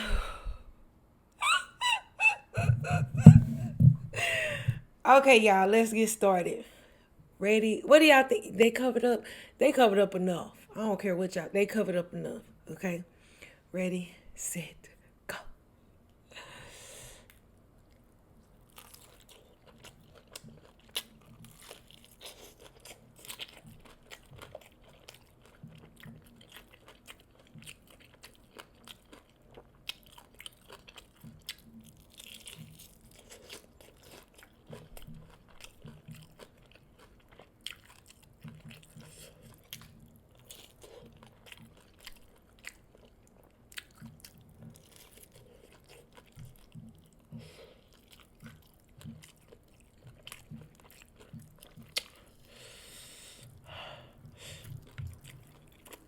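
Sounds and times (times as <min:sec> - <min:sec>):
person chewing fried chicken: 0:17.1 - 0:56.0.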